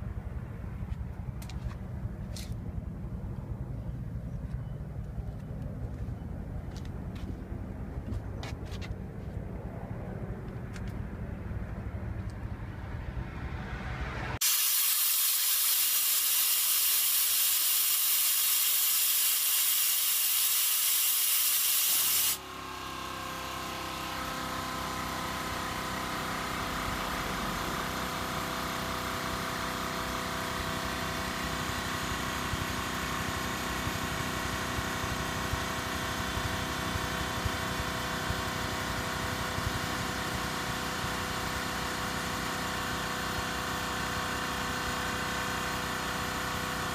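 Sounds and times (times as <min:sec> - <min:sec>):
compressed air hissing out: 0:14.4 - 0:22.4
air compressor motor running: 0:14.4 - 0:46.9.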